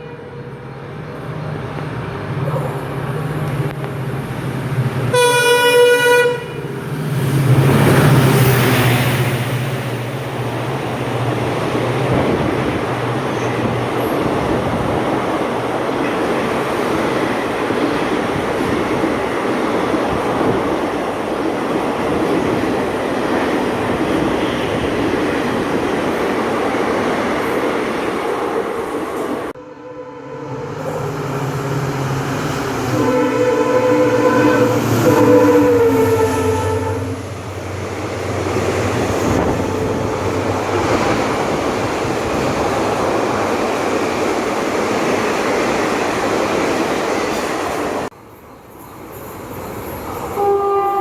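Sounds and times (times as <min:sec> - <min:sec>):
train horn: 0:00.0 - 0:00.6, 0:05.1 - 0:06.7, 0:29.6 - 0:31.4, 0:32.8 - 0:37.3, 0:39.2 - 0:41.0, 0:50.3 - 0:51.0
train rumbling past: 0:00.0 - 0:51.0.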